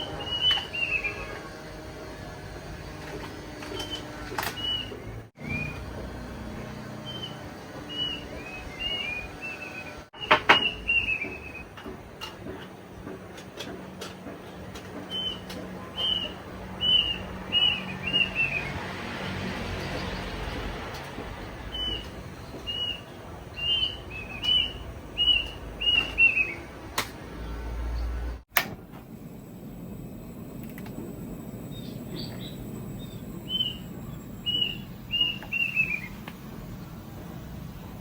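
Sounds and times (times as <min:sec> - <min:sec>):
bird chirping: 0:00.0 - 0:01.4, 0:03.7 - 0:05.9, 0:07.0 - 0:11.7, 0:15.1 - 0:18.8, 0:21.6 - 0:26.7, 0:31.6 - 0:37.0
outdoor background noise: 0:00.0 - 0:38.0.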